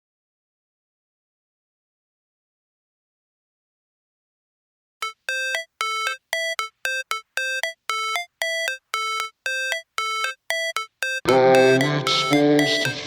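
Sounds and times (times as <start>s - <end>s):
clipped electronic melody: 5.0s - 13.0s.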